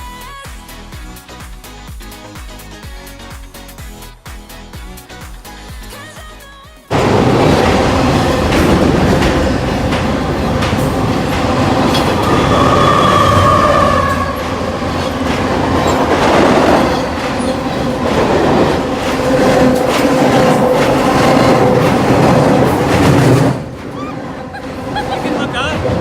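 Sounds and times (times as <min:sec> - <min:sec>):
wheel clatter: 0:06.9 - 0:13.5, 0:14.2 - 0:26.0
train rumbling overhead: 0:06.9 - 0:26.0
high wheel squeal: 0:08.2 - 0:22.0.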